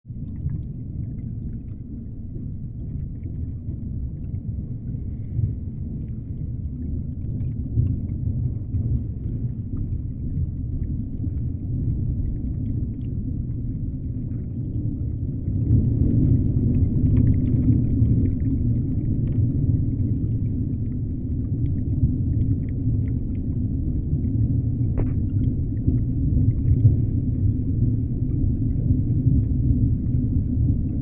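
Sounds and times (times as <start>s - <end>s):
low underwater rumble: 0.0s - 31.0s
faint clicks and crackles: 0.2s - 31.0s.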